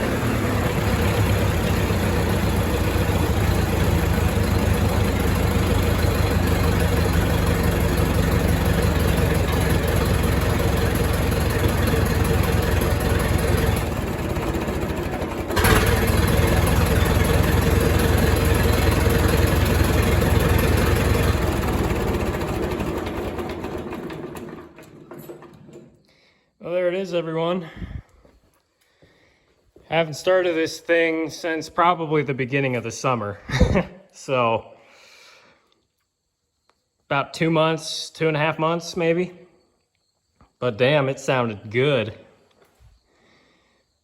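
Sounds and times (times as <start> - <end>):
tractor engine running: 0.0 - 25.9.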